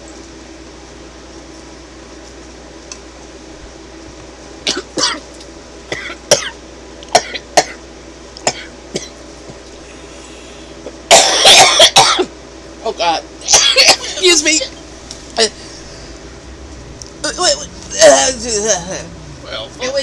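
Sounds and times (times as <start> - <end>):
woman coughing and choking: 11.1 - 12.3.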